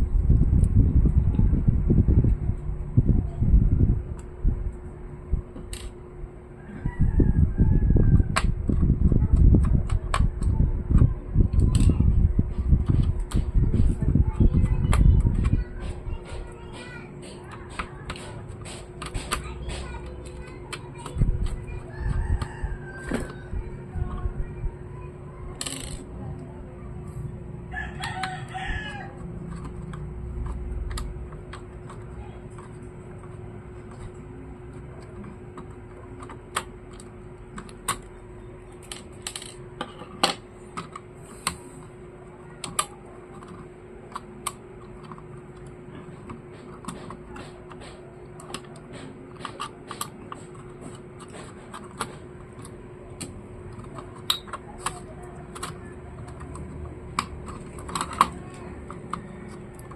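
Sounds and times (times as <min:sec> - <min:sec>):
faint steady hum: 0:00.0 - 0:59.9
rooster crowing: 0:06.6 - 0:08.3, 0:21.9 - 0:23.5, 0:27.7 - 0:29.2
laptop parts clicking: 0:07.6 - 0:24.2, 0:25.5 - 0:26.1, 0:27.8 - 0:59.9.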